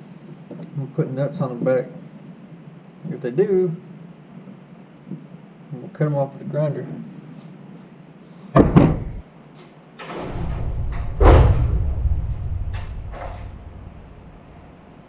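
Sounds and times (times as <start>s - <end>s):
heavy clunk: 8.6s - 9.2s, 10.0s - 14.7s
knock: 8.6s - 9.2s
rumbling and scraping: 8.6s - 9.2s, 10.1s - 14.8s.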